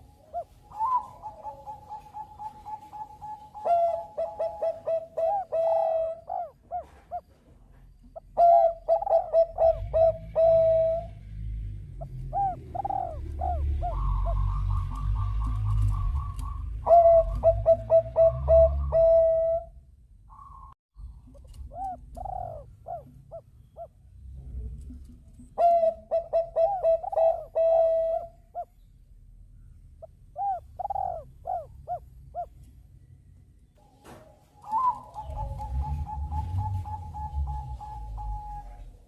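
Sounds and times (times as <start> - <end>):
dove cooing: 0.0 - 7.4, 8.0 - 11.2, 12.0 - 20.7, 21.3 - 24.0, 24.9 - 28.8, 30.0 - 32.6, 34.5 - 39.0.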